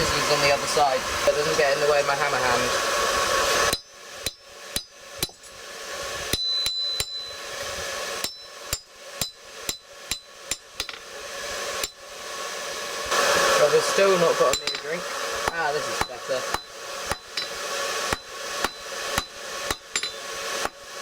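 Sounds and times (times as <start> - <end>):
hammer striking steel on anvil: 3.7 - 5.6, 6.3 - 11.1, 14.5 - 20.8.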